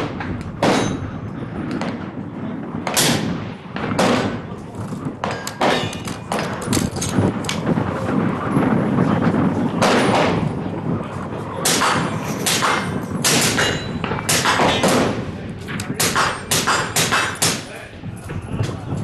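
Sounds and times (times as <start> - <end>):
gunshots: 0.0 - 7.7, 9.7 - 10.7, 11.6 - 17.8.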